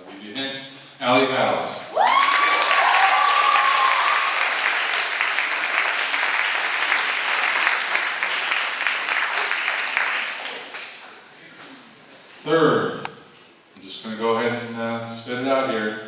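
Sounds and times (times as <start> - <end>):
high whoop: 1.9 - 4.4
audience applauding: 2.0 - 11.2.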